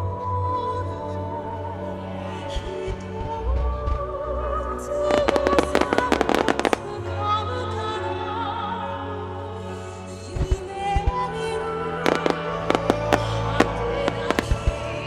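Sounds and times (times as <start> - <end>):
music with melodic lines: 0.0 - 15.0
fireworks bangs: 5.1 - 7.0, 12.1 - 14.9.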